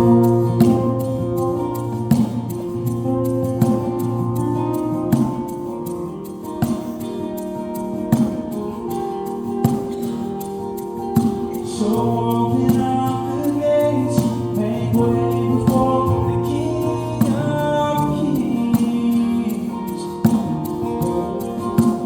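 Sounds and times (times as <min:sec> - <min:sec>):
strummed accompaniment: 0:00.0 - 0:22.0
voices singing worship song: 0:11.6 - 0:22.0.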